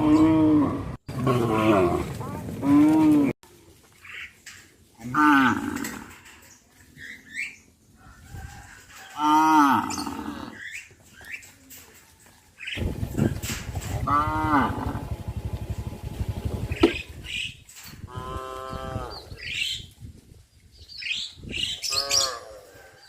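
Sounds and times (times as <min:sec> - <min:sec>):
cows mooing: 0:00.0 - 0:03.3, 0:05.0 - 0:06.2, 0:09.2 - 0:10.6, 0:13.8 - 0:15.8
rough rumbling noise: 0:12.8 - 0:18.2.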